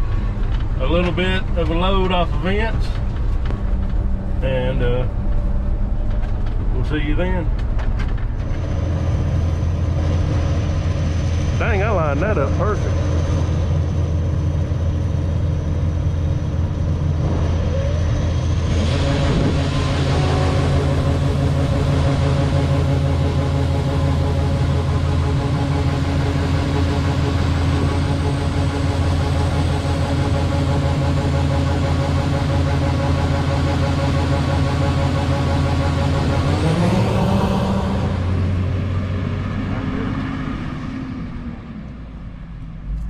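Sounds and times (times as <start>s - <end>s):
heavy engine humming: 0.0s - 43.0s
broad rushing noise: 17.1s - 30.8s.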